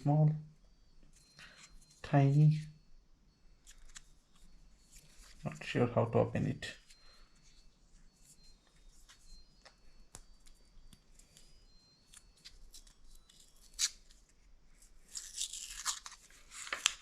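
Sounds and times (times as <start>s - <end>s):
crinkly wrapping rustling: 3.7s - 5.8s, 6.8s - 17.0s
hands handling packaging: 8.6s - 17.0s.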